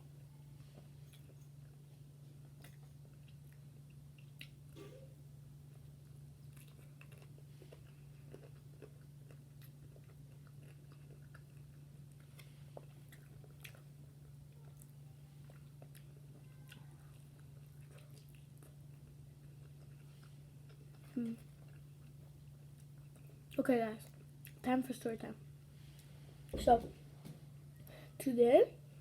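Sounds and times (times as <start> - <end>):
chewing and biting chicken: 5.7 - 24.6.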